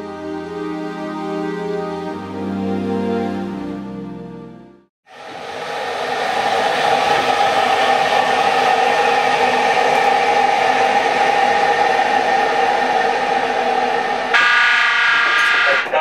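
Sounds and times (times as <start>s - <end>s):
train cab running noise: 5.6s - 16.0s.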